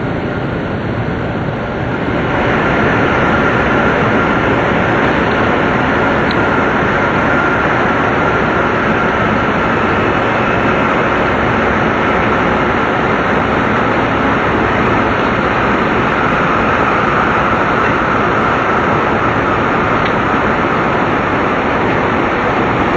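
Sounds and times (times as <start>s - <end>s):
faint steady whine: 0.0s - 22.9s
train rumble inside passenger car: 0.0s - 22.9s.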